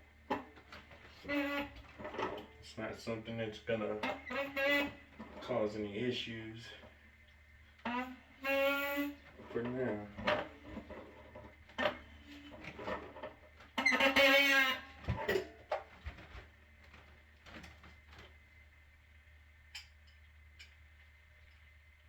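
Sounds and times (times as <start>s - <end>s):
steady low hum: 0.0s - 13.8s.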